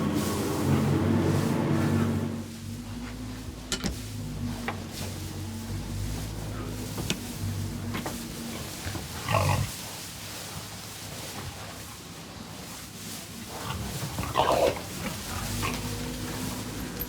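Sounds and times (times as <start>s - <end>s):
low steady hum: 0.0s - 10.5s, 13.9s - 17.0s
pigs grunting and squealing: 5.1s - 9.9s, 13.5s - 17.0s.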